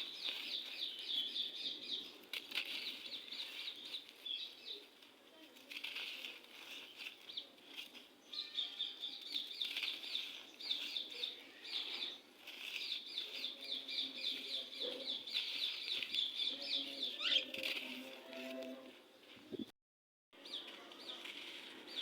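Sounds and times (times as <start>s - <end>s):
bird singing: 0.0s - 4.9s, 8.2s - 18.6s.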